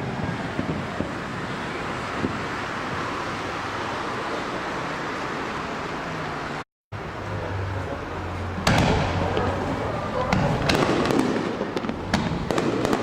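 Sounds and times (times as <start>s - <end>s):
steady outdoor rumble: 0.0s - 13.0s
firework shell bursting loudly: 10.3s - 13.0s.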